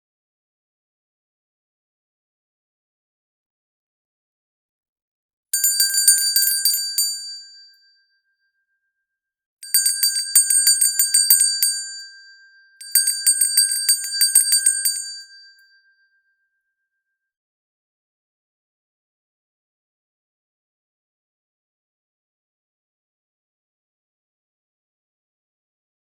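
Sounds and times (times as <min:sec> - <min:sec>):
hand bell ringing: 0:05.6 - 0:07.4, 0:09.6 - 0:12.2, 0:12.8 - 0:15.5.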